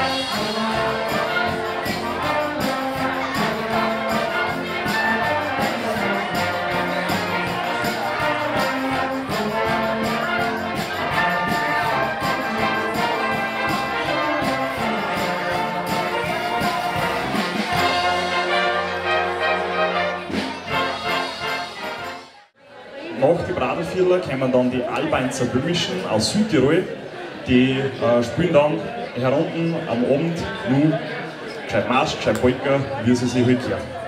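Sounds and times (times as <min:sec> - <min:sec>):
brass band playing: 0:00.0 - 0:22.6.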